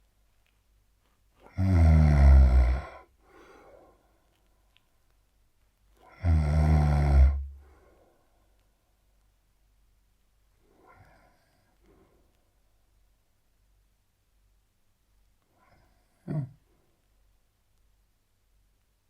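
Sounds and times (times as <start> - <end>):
man snoring: 1.5 - 3.1, 6.1 - 7.6
soft breath: 3.0 - 5.0, 7.3 - 9.1, 10.6 - 12.9.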